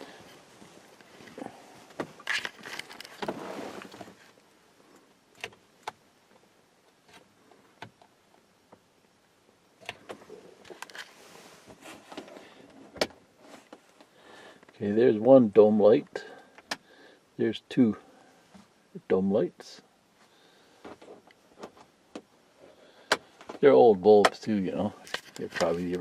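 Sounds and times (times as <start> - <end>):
short rustling: 0.0 - 4.4.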